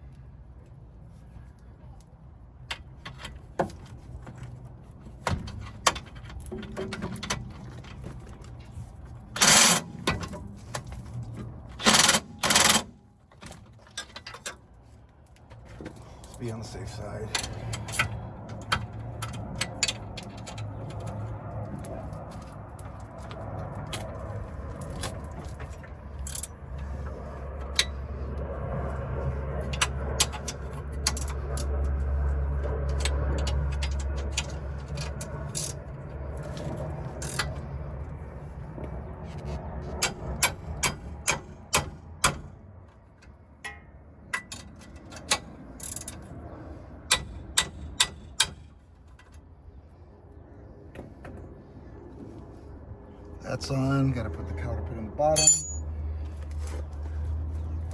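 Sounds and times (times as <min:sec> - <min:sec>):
low hum: 0:04.2 - 0:57.9
metal tools clinking on steel: 0:55.2 - 0:56.0.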